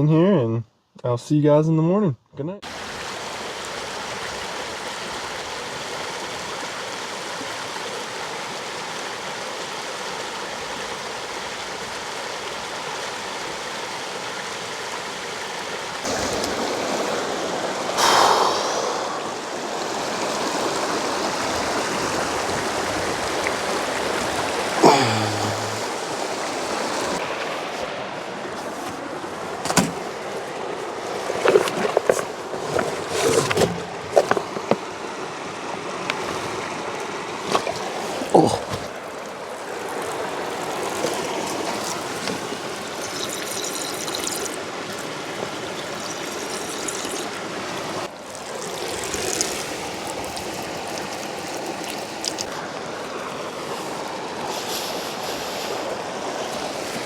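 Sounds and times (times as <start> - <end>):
mountain river rushing: 2.6 - 57.0.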